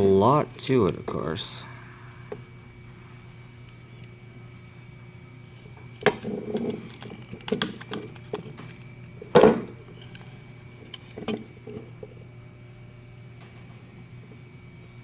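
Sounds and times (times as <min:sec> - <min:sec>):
steady low hum: 0:00.0 - 0:15.0
plastic parts knocking and clicking: 0:06.0 - 0:09.7.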